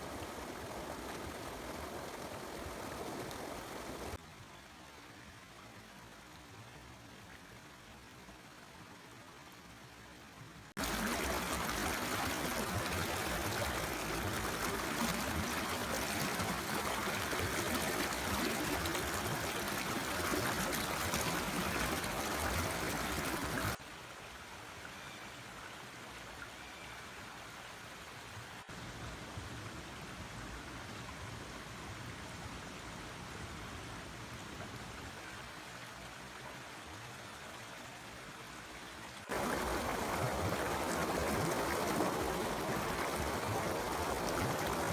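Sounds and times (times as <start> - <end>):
forest stream flowing: 0.0 - 44.9.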